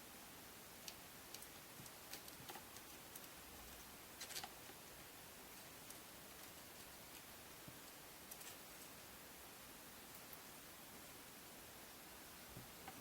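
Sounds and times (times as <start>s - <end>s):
small clicks and taps: 0.8s - 3.4s.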